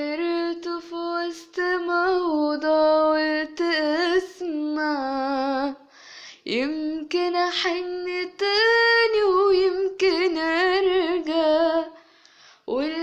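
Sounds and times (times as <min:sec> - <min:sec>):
woman singing unaccompanied: 0:00.0 - 0:12.0, 0:12.6 - 0:13.0
woman taking a breath: 0:05.9 - 0:06.4, 0:12.0 - 0:12.7.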